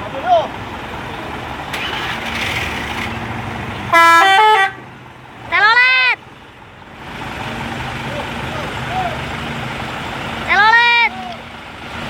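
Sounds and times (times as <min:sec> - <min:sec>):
idling traffic: 0:00.0 - 0:12.0
multi-tone musical air horn: 0:03.9 - 0:04.8.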